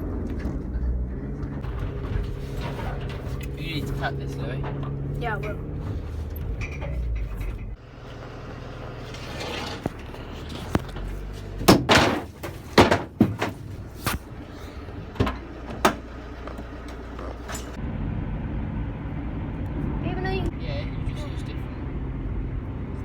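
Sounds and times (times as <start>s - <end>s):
low steady rumble: 0.0s - 23.0s
sharp knocks and bangs: 10.6s - 14.3s.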